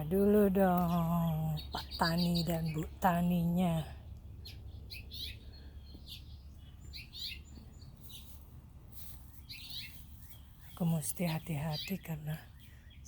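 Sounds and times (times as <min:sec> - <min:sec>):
low steady rumble: 0:00.0 - 0:13.0
small birds chirping: 0:00.0 - 0:13.0.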